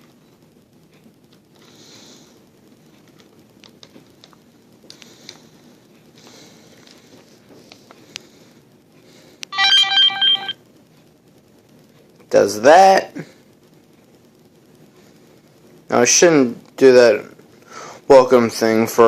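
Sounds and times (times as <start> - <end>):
low hiss: 0.0 - 19.0
electronic beeping notes: 9.6 - 10.6.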